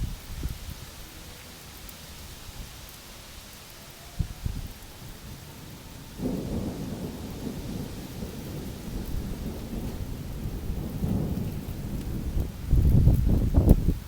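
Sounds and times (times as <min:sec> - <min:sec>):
rain hissing: 0:00.0 - 0:14.0
thunder rolling: 0:04.2 - 0:14.0.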